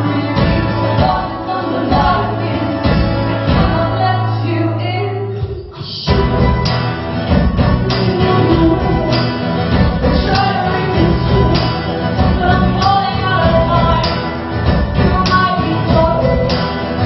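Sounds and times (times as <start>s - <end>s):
several voices singing: 0.0s - 4.4s, 7.7s - 14.3s
live band playing: 0.0s - 17.0s.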